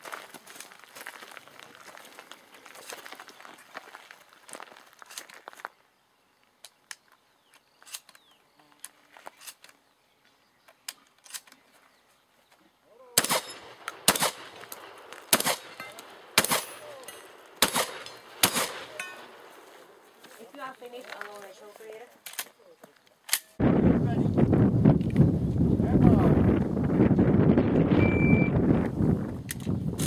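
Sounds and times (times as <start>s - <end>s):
shotgun shots: 13.2s - 19.7s.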